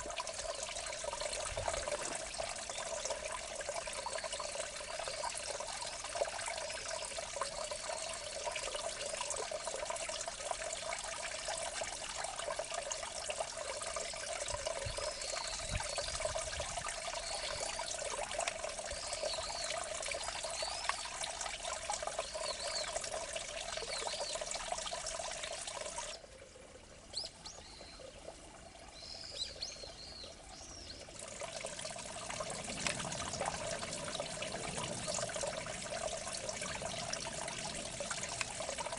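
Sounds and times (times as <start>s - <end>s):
water trickling in a ditch: 0.0s - 38.9s
small birds chirping: 14.7s - 16.4s, 18.9s - 21.1s.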